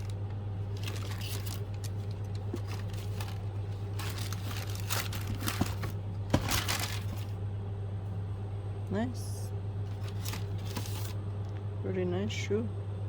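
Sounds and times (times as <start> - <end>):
paper and cardboard crinkling: 0.0 - 7.4, 9.9 - 11.2.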